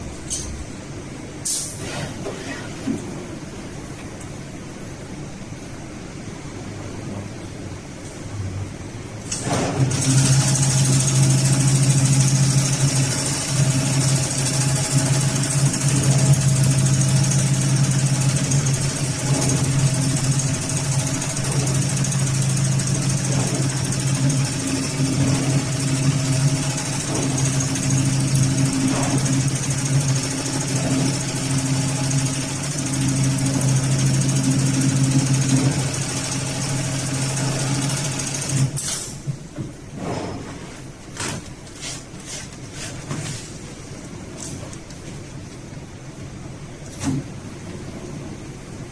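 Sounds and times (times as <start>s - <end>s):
sewing machine humming: 9.3s - 38.8s.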